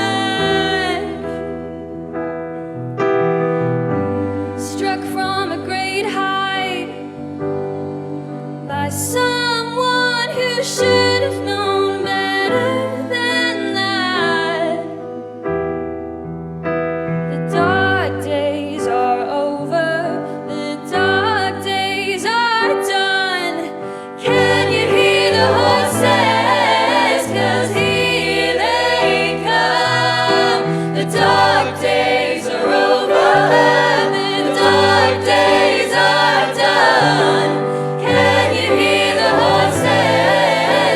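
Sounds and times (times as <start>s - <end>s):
layered singing voices: 24.2s - 40.9s
sustained keyboard chords: 24.2s - 40.9s.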